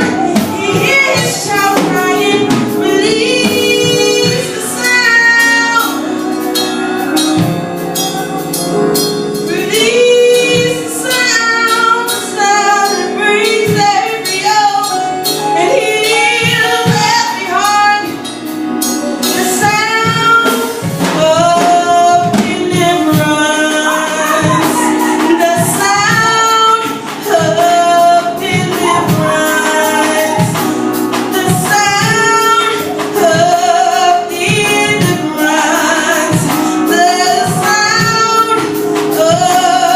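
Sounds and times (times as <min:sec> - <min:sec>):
woman singing: 0:00.0 - 0:06.8, 0:09.4 - 0:18.3, 0:19.2 - 0:39.9
percussion beat: 0:00.0 - 0:09.9, 0:18.8 - 0:39.9
gospel instruments: 0:00.0 - 0:39.9.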